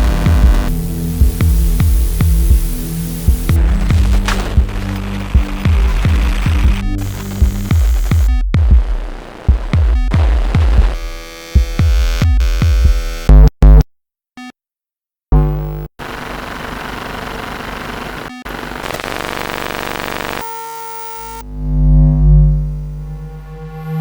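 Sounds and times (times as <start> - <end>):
low hum: 0.0 - 8.1, 21.4 - 24.0
steady noisy buzz: 0.0 - 11.0
glitchy electromagnetic buzzing: 0.0 - 13.5, 15.4 - 24.0.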